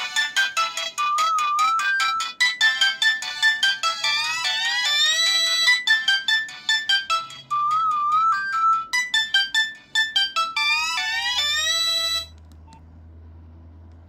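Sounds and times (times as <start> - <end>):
electronic ringtone melody: 0.0 - 12.3.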